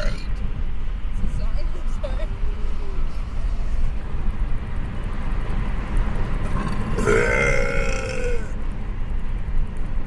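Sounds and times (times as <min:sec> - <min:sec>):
woman belching: 0:00.0 - 0:00.3, 0:07.0 - 0:08.5.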